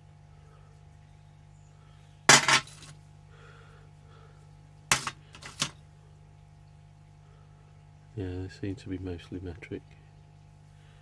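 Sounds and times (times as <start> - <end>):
metal sockets clinking: 2.3 - 2.9, 4.9 - 5.8.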